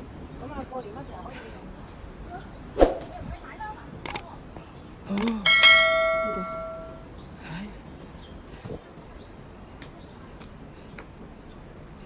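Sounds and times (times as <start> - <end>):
insects chirring: 0.0 - 12.0
struck metal bell tone: 5.5 - 7.0.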